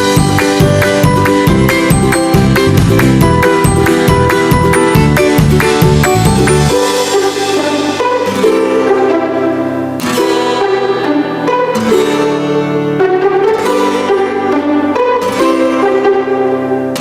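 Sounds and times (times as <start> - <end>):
plucked and bowed strings music: 0.0 - 17.0.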